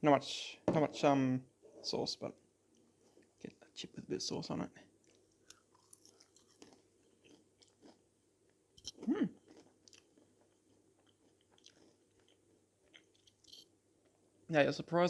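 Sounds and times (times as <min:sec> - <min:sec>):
person chewing crunchy chip: 0:05.1 - 0:08.0, 0:08.8 - 0:13.6.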